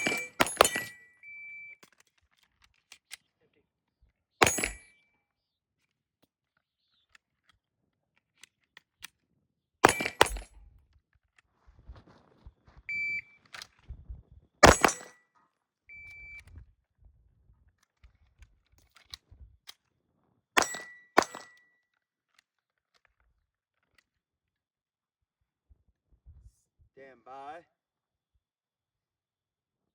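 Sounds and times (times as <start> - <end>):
pistol shots: 9.8 - 10.5, 14.6 - 15.1.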